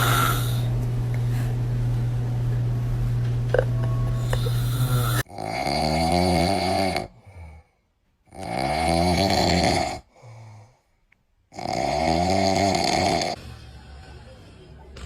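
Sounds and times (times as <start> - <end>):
man snoring loudly: 0.0 - 0.7, 4.2 - 7.7, 8.3 - 10.1, 11.5 - 13.4
quiet breaths: 4.2 - 5.3, 10.0 - 11.2.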